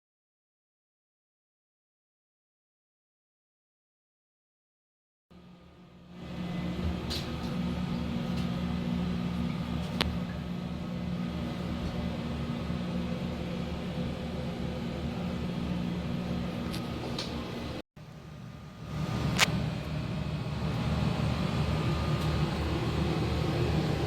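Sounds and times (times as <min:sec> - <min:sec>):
running motor hum: 0:05.3 - 0:24.0.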